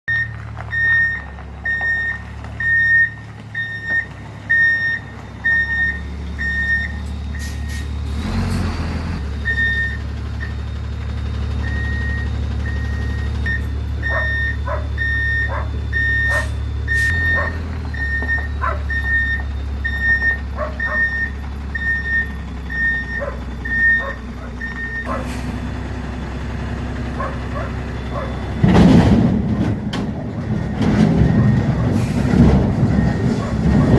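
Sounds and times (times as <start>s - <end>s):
truck backup alarm beeping: 0.1s - 33.9s
truck engine running: 0.1s - 33.9s
dog barking: 14.1s - 14.9s, 15.5s - 15.7s, 16.3s - 16.5s, 17.4s - 17.6s, 18.6s - 18.9s, 20.6s - 21.1s, 23.2s - 23.4s, 24.0s - 25.3s, 27.2s - 28.4s, 33.4s - 33.9s.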